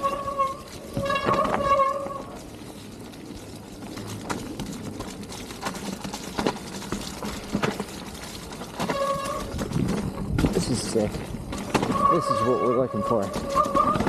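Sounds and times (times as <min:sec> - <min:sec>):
wheels knocking on obstacles: 0:00.0 - 0:02.2, 0:04.0 - 0:14.0
bike tyre and drivetrain rattle: 0:00.0 - 0:14.0.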